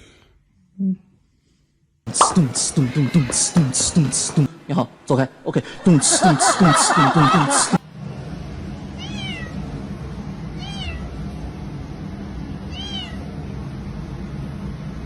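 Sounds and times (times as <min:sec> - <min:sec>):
steady low hum: 0:00.4 - 0:15.0
cat meowing: 0:09.0 - 0:09.6, 0:10.6 - 0:11.1, 0:12.7 - 0:13.3.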